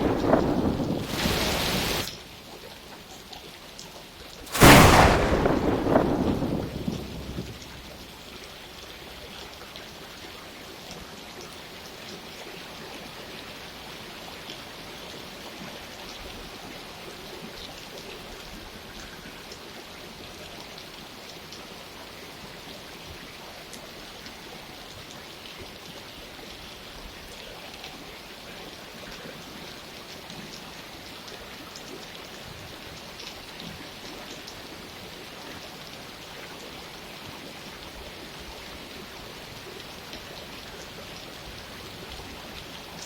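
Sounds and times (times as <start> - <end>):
thunder rumble: 0.0 - 2.1, 4.5 - 8.4
steady rain falling: 0.0 - 43.0.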